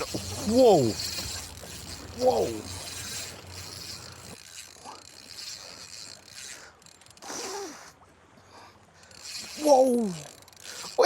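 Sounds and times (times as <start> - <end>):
fishing reel ratcheting: 0.0 - 7.9, 9.0 - 11.0.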